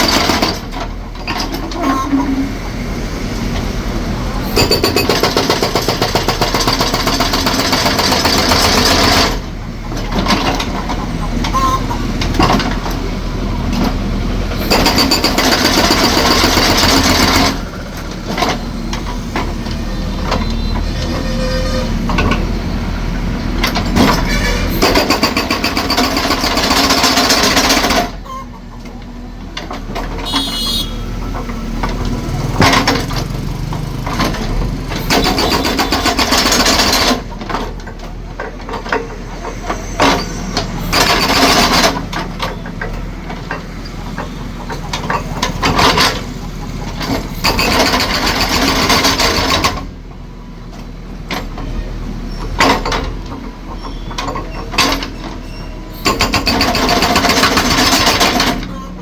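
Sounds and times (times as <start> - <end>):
concrete breaker hammering concrete: 4.6 - 9.4, 14.6 - 17.6.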